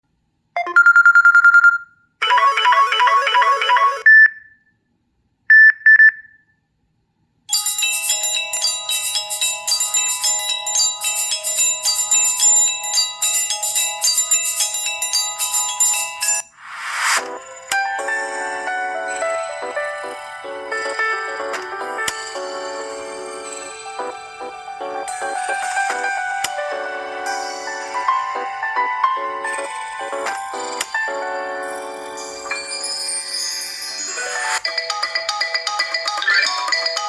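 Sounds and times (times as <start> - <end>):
melodic phone ringtone: 0.6 - 4.4, 7.5 - 16.5, 17.1 - 37.0.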